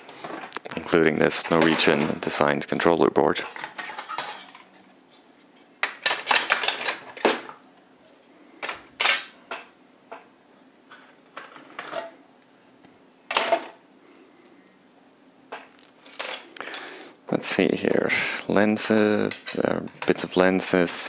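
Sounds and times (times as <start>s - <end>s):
small parts clattering and clinking: 3.3s - 4.8s, 5.8s - 7.6s, 8.6s - 9.7s, 15.7s - 16.9s.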